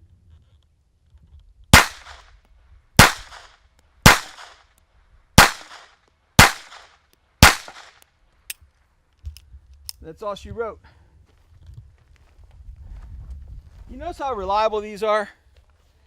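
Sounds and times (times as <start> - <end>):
pistol shots: 1.7 - 2.2, 3.0 - 4.7, 5.4 - 8.0.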